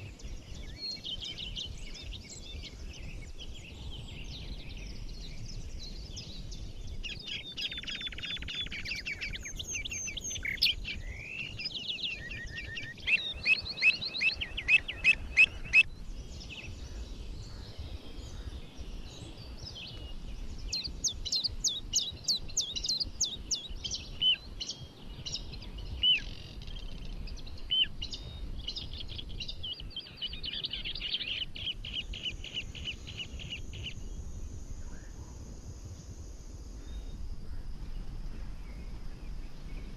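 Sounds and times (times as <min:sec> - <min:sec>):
songbirds singing and chirping: 0:00.0 - 0:39.9.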